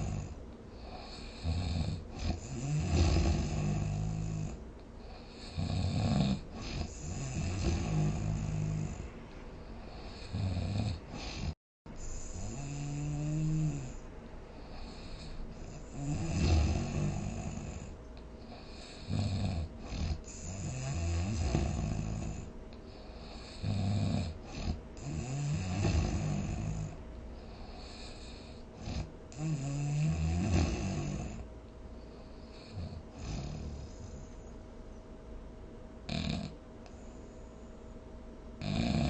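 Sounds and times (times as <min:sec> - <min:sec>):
person snoring: 0:00.0 - 0:09.1, 0:09.7 - 0:14.0, 0:14.6 - 0:22.5, 0:23.1 - 0:31.5, 0:32.5 - 0:34.3, 0:36.1 - 0:36.6, 0:38.6 - 0:39.0.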